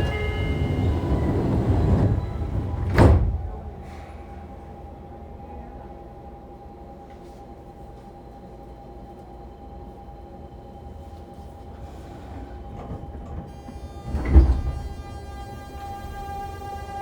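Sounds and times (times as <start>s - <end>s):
heavy clunk: 0.0s - 3.6s
train humming: 0.0s - 17.0s.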